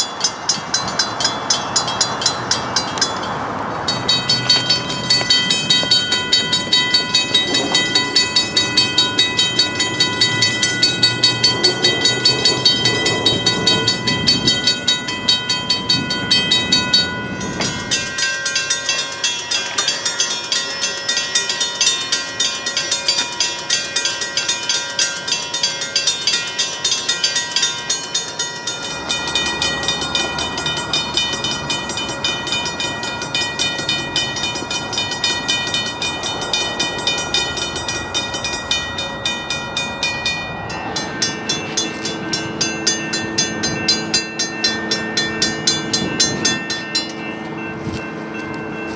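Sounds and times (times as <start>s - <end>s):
railroad crossing bells ringing: 0.0s - 48.9s.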